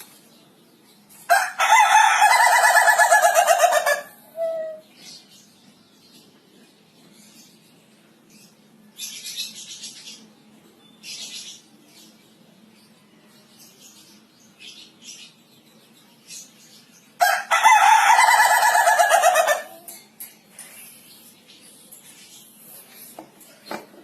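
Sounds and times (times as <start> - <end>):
rooster crowing: 1.3 - 4.8, 17.2 - 19.8.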